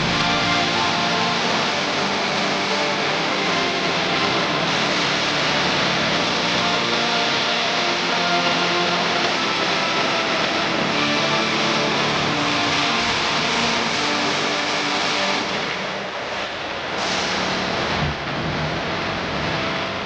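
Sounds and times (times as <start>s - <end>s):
loud dense music: 0.0s - 15.9s.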